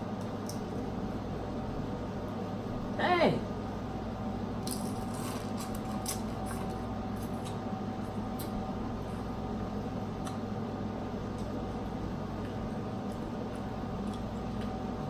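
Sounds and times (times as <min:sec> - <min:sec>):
steady low hum: 0:00.0 - 0:15.0
clicks of food being chewed: 0:10.2 - 0:10.5, 0:12.4 - 0:14.8.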